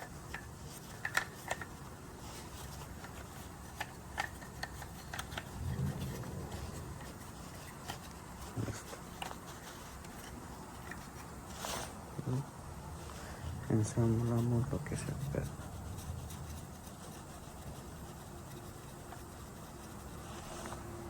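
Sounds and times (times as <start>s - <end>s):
metal engine parts clicking: 0.0s - 1.9s, 2.5s - 11.4s.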